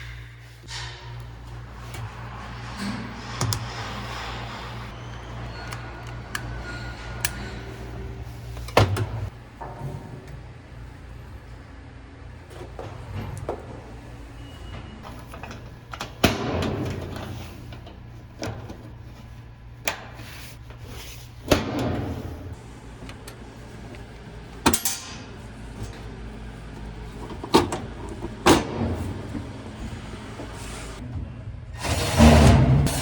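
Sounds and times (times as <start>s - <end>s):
tools knocking and clunking: 0.7s - 10.4s, 15.0s - 19.2s.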